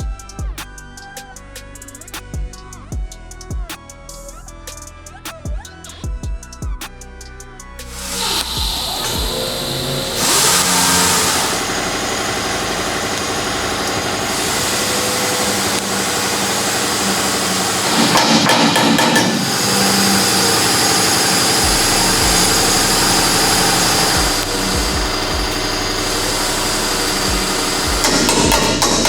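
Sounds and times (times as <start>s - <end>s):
motor running: 7.9s - 29.0s.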